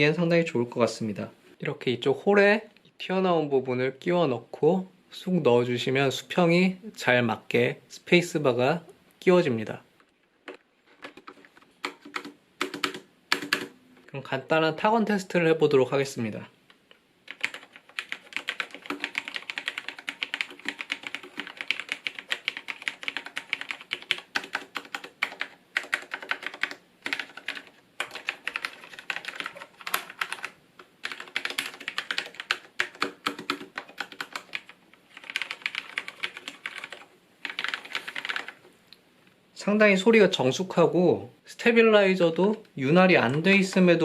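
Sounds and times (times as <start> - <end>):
mechanical keyboard typing: 10.5 - 13.7, 17.2 - 38.6.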